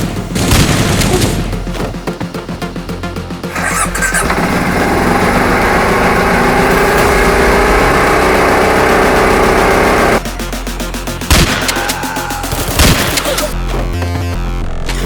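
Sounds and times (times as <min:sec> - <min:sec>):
atv engine revving: 0:03.4 - 0:10.2.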